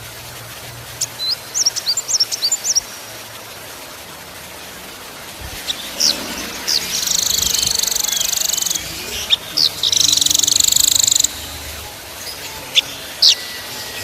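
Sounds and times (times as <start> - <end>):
songbird whistled song: 1.0 - 3.0, 5.6 - 14.0
bird buzzing trill: 5.3 - 14.0.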